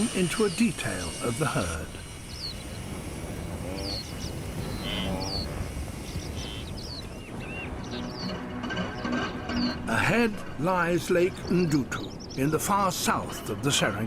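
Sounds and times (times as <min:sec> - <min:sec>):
low rumble of herd: 0:02.8 - 0:07.7
animals lowing grunts: 0:03.0 - 0:06.6.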